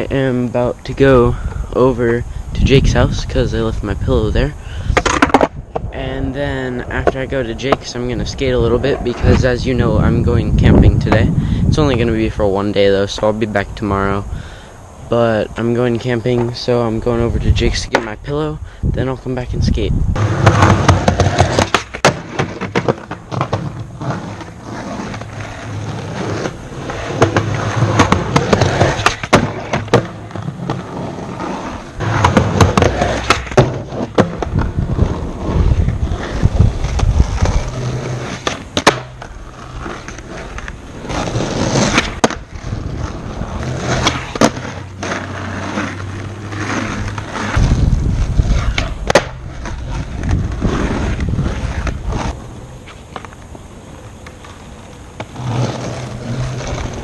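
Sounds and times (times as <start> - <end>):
skateboard wheels rolling on pavement: 0.0 - 57.0
skateboard clacking on ground: 4.9 - 5.9, 7.0 - 9.3, 17.9 - 18.2, 20.2 - 47.7, 48.4 - 57.0.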